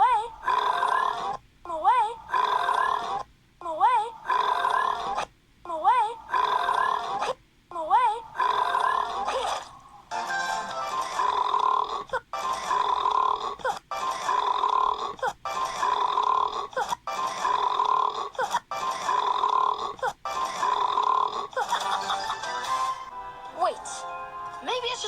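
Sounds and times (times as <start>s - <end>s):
cartoon dragon burping: 0.4s - 1.4s, 2.3s - 3.3s, 4.2s - 5.3s, 6.3s - 7.4s, 8.4s - 9.8s, 10.9s - 22.2s
background music: 10.1s - 11.4s, 21.6s - 25.0s.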